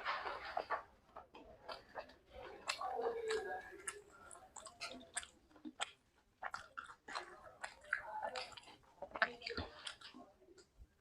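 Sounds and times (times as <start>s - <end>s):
person chewing food: 0.0s - 11.0s
wet mouth clicks: 2.6s - 10.8s.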